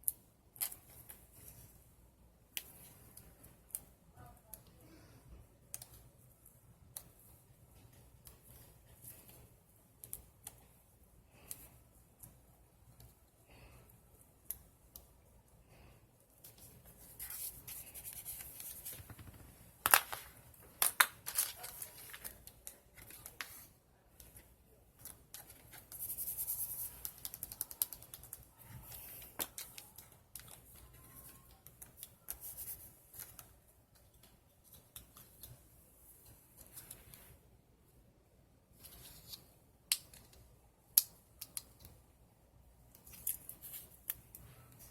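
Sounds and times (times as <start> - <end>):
paper rustling: 16.4 - 23.7.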